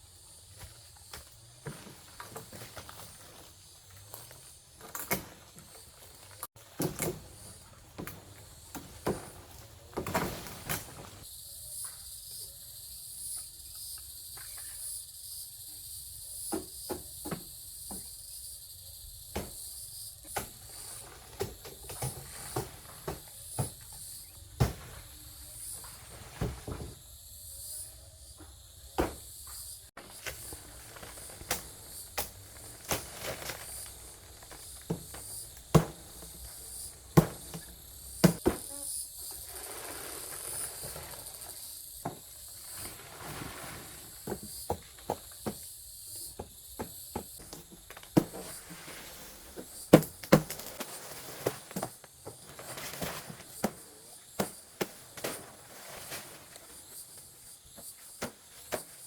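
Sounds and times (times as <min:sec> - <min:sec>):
insects calling: 0:00.0 - 0:59.0
knocks and taps of work: 0:16.5 - 0:18.1.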